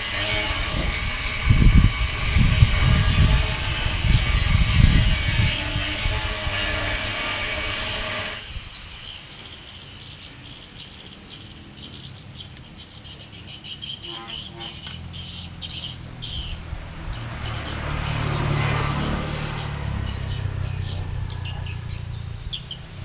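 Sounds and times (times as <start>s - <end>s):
bird chirps: 8.6s - 17.9s, 19.6s - 23.0s.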